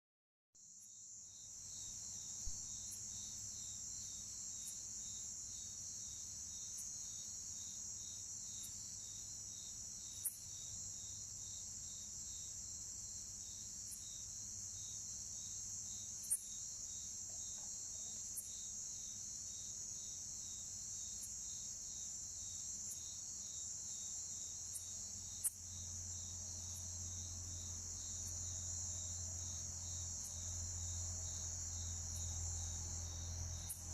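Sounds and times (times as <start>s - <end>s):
high-pitched insect trill: 0.6s - 33.9s
soft pulsing insect trill: 0.6s - 33.9s
katydid chirps: 11.4s - 33.9s.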